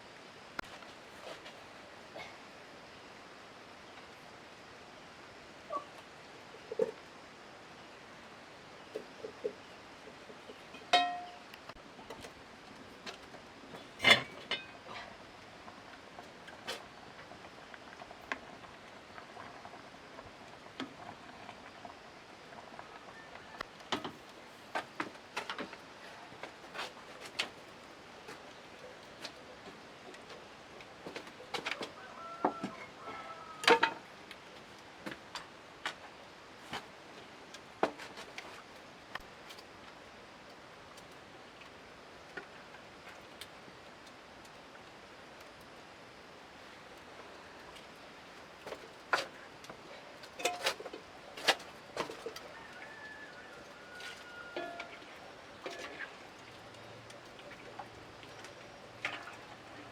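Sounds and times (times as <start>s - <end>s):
faint steady hiss: 0.0s - 59.9s.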